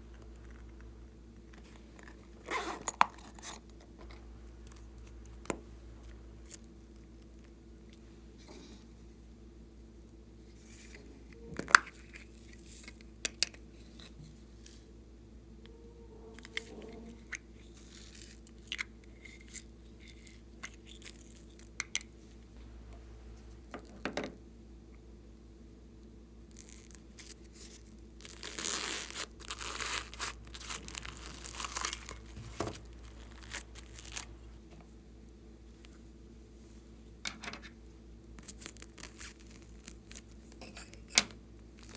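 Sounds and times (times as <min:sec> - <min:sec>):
slime crackling: 0:26.5 - 0:34.5, 0:38.4 - 0:40.6.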